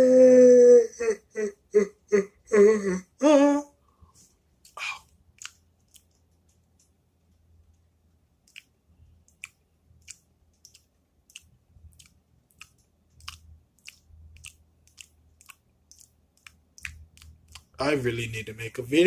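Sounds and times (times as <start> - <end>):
person chewing crunchy food: 4.6 - 6.3, 8.4 - 17.8.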